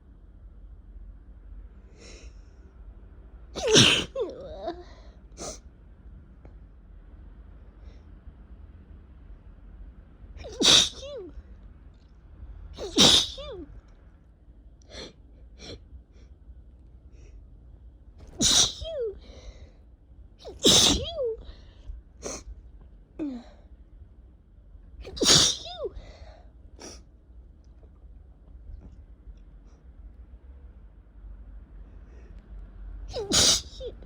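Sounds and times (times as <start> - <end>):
person sneezing loudly: 3.6 - 4.4, 10.4 - 11.3, 12.8 - 13.7, 18.2 - 19.2, 20.4 - 21.6, 25.0 - 26.1, 33.1 - 34.0.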